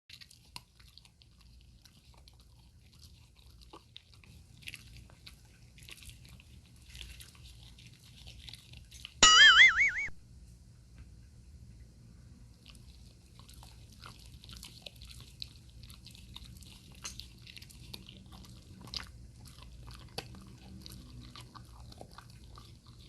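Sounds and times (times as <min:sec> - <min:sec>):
dog chewing: 0:00.1 - 0:09.2, 0:12.6 - 0:23.0
wavering electronic tone: 0:09.2 - 0:10.1.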